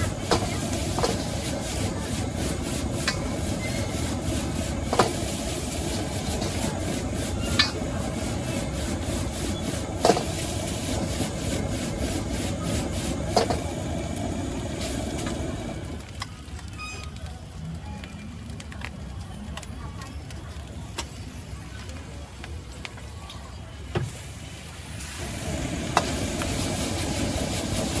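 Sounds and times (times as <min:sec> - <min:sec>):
food stir-frying in a wok: 0:00.0 - 0:16.2, 0:24.0 - 0:28.0
steady burner noise: 0:00.0 - 0:17.8, 0:23.0 - 0:28.0.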